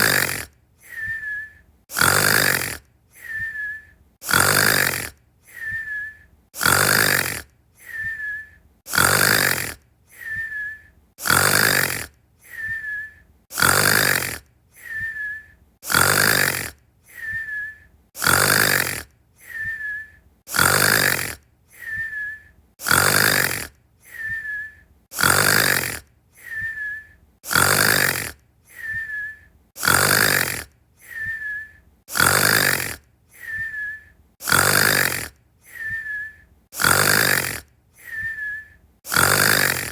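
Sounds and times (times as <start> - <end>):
whistling out-breath: 0.0 - 11.8, 12.4 - 39.9
loud rasping snore: 0.0 - 39.9.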